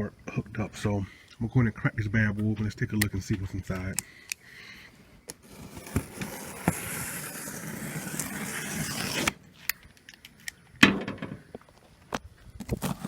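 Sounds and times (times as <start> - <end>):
thump: 10.8 - 11.4.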